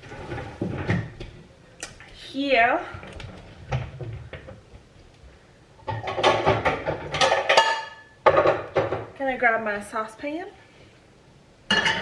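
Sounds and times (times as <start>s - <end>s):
metal pots and pans clattering: 5.8s - 9.1s, 11.7s - 12.0s.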